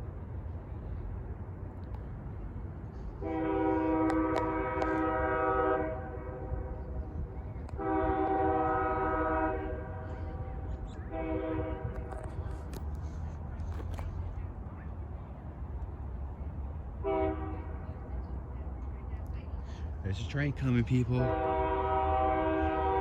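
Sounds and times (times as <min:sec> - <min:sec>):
steady low rumble: 0:00.0 - 0:22.4
locomotive air horn blasts: 0:03.2 - 0:07.0, 0:07.7 - 0:12.8, 0:17.0 - 0:17.8, 0:21.2 - 0:23.0.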